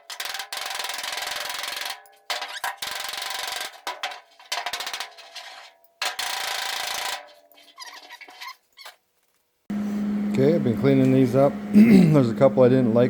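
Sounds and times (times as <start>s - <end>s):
grinder grinding metal: 0.0s - 9.0s.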